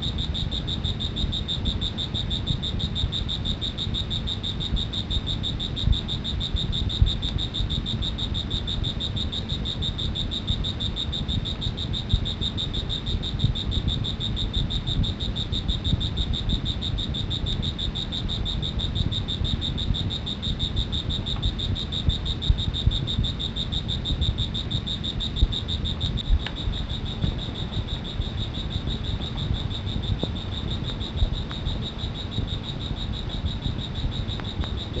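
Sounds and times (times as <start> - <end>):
insect trilling: 0.0 - 35.0
low background rumble: 0.0 - 35.0.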